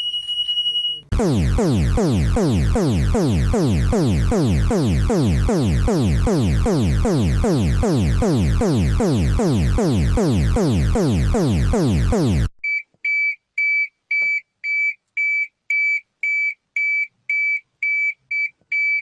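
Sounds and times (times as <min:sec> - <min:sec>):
electronic alert alarm falling sweeps: 0:01.1 - 0:12.6.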